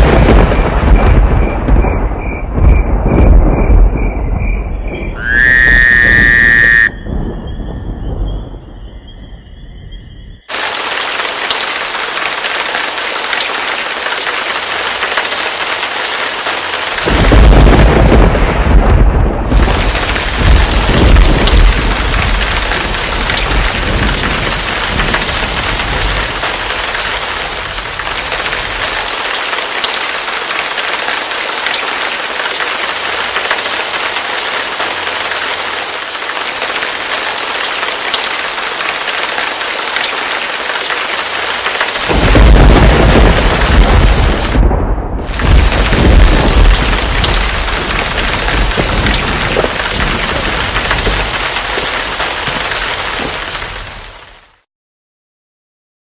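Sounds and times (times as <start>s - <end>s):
low thunder rumble: 0.0s - 10.5s, 17.0s - 29.2s, 42.0s - 54.1s
heavy rain hissing: 10.5s - 54.4s.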